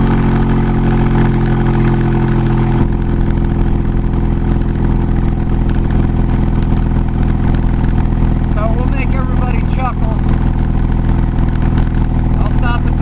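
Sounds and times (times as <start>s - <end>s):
road noise: 0.0s - 13.0s
truck engine drone: 0.0s - 13.0s
man talking: 8.5s - 10.2s, 12.4s - 13.0s.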